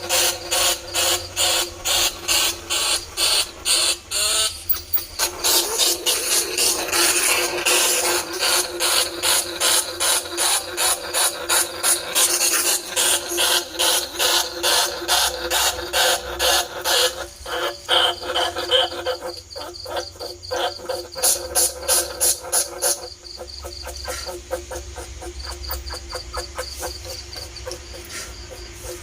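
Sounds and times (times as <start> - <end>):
rat squeaks and clicks: 0.2 - 5.3, 12.2 - 29.0.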